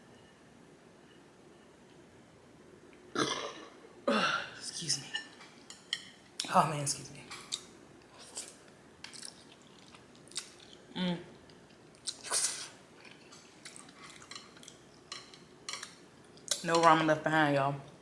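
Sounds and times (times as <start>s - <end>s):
chewing noodles: 8.2s - 10.8s.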